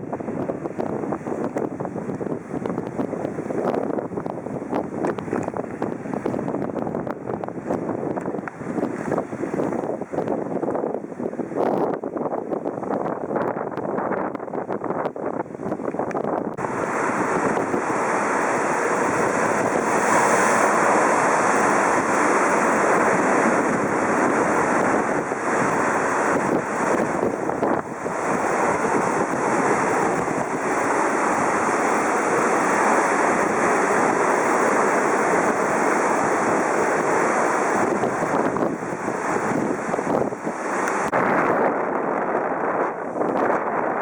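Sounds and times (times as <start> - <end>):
wind on microphone: 0.0 - 44.0
sea waves washing in: 16.6 - 44.0.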